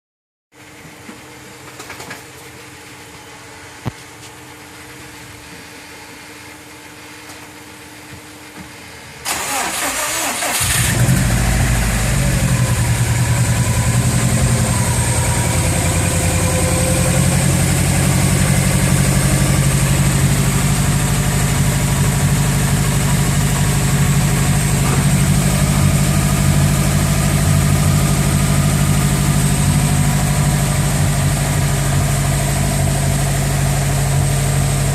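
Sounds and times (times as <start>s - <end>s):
car engine starter cranking: 9.3s - 11.4s
car engine idling: 9.3s - 34.9s.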